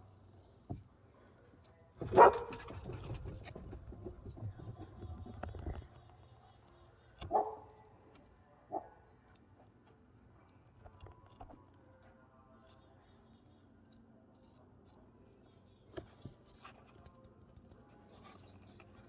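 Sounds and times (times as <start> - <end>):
dog barking: 2.0 - 2.9, 7.3 - 7.8, 8.7 - 9.0.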